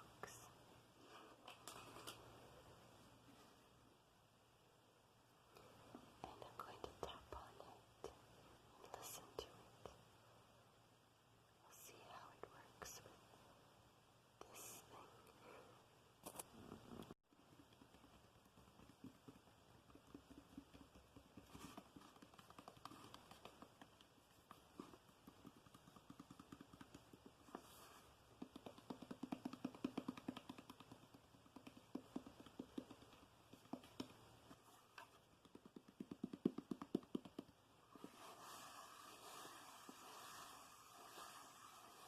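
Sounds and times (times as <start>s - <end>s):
soft hiss: 0.0s - 42.0s
fingertip tapping on a surface: 17.6s - 27.6s, 28.4s - 34.2s, 35.0s - 37.6s.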